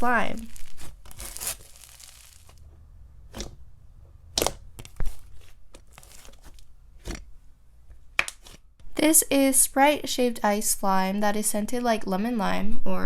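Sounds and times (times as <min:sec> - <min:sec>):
slime crackling and popping: 0:00.0 - 0:02.6, 0:04.4 - 0:06.6
slime crinkling: 0:00.0 - 0:02.7, 0:04.4 - 0:07.3.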